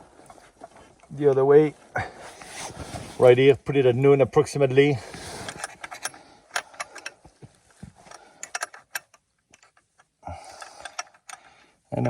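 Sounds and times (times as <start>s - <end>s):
soft rustle: 0.0s - 6.4s
sharp clicks and metallic ticks: 8.1s - 11.5s.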